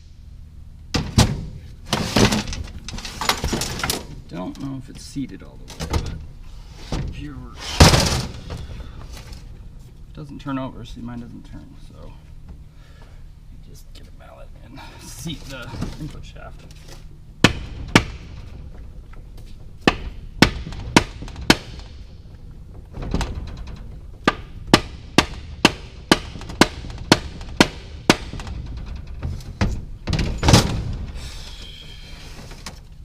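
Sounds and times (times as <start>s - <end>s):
heavy thud: 17.4s - 31.4s.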